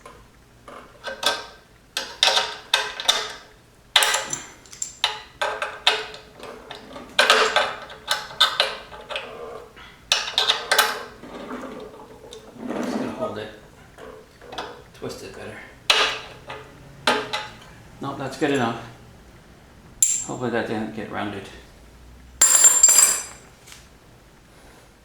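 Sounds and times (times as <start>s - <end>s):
clink of metal: 20.0s - 20.4s, 22.4s - 23.4s.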